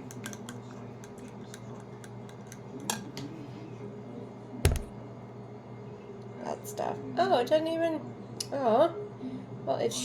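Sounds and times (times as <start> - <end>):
utensils and dishes clicking: 0.0 - 3.1
loud thud on counter: 4.7 - 4.9.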